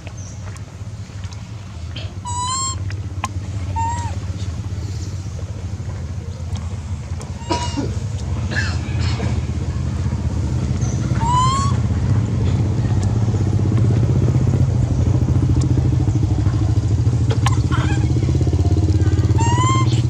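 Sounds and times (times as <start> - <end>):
small engine idling: 0.0 - 20.0
short rising squeal: 2.2 - 2.8, 11.1 - 11.9.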